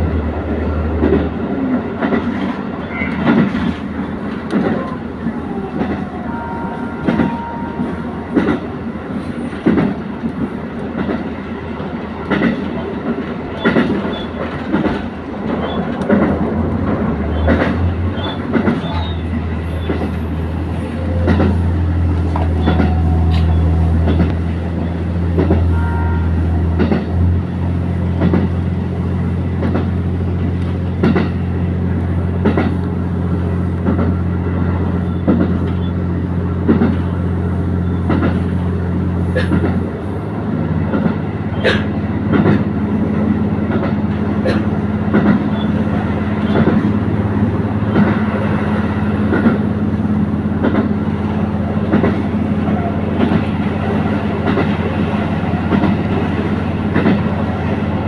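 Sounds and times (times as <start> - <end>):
train wheels clicking over rail joints: 0.0 - 6.1, 8.3 - 25.8, 26.6 - 58.0
low engine drone: 16.0 - 42.2.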